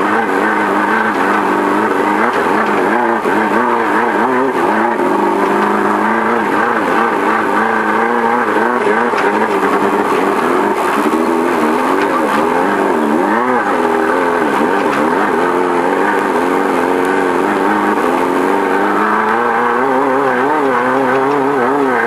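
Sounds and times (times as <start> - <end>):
race car engine revving: 0.0 - 22.0.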